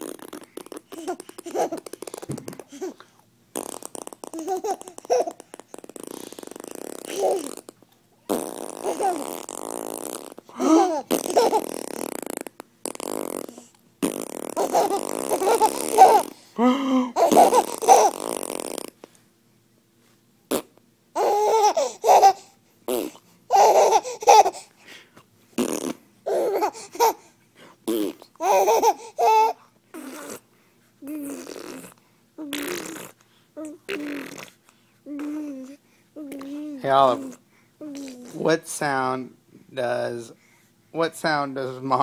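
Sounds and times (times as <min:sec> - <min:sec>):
imitation fart sounds: 0:00.0 - 0:02.7, 0:03.5 - 0:16.4, 0:17.2 - 0:19.0, 0:20.5 - 0:20.8, 0:22.9 - 0:23.2, 0:25.6 - 0:26.1, 0:27.8 - 0:28.3, 0:31.1 - 0:33.2, 0:33.9 - 0:34.6
baby laughing: 0:00.4 - 0:03.0, 0:04.2 - 0:07.6, 0:08.8 - 0:09.2, 0:10.5 - 0:12.1, 0:14.5 - 0:16.4, 0:17.1 - 0:18.2, 0:21.2 - 0:24.7, 0:26.3 - 0:27.3, 0:28.0 - 0:30.3.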